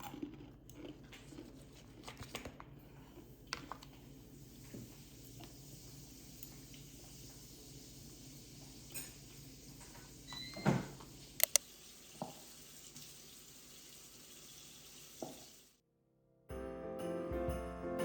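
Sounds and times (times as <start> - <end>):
music: 16.1 - 18.0.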